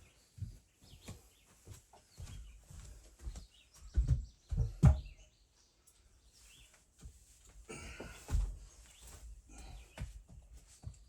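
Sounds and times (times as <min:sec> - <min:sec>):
irregular knocks and thumps: 0:03.3 - 0:05.3.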